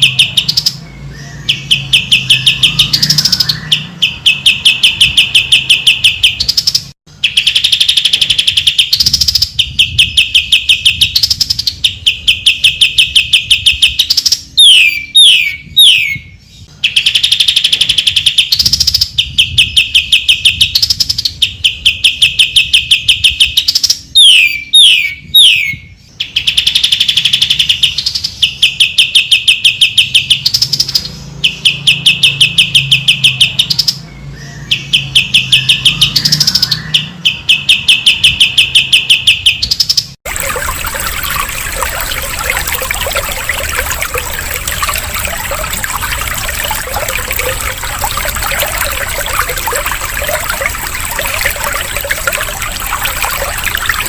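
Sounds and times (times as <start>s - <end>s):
descending bird whistles: 0.0s - 20.9s, 22.0s - 30.6s
bird chattering song: 0.0s - 40.2s.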